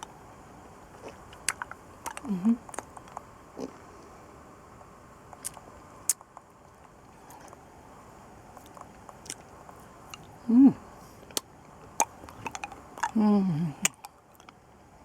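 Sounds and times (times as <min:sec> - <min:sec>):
wet mouth clicks and smacks: 0:01.0 - 0:03.8, 0:05.3 - 0:06.3, 0:08.6 - 0:10.4, 0:11.2 - 0:13.2
short voiced hum: 0:02.2 - 0:02.7, 0:10.4 - 0:11.0, 0:13.1 - 0:13.9.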